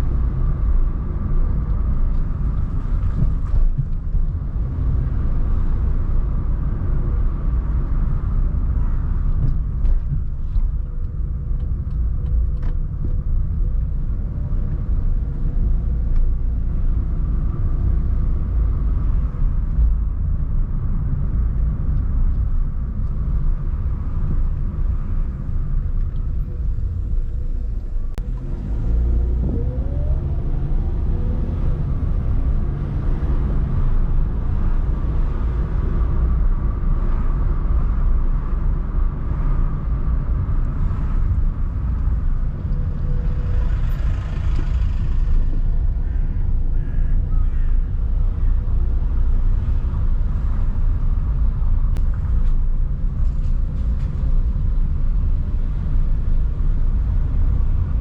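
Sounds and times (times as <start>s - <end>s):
car engine rumble: 0.0s - 58.0s
road noise: 0.0s - 58.0s.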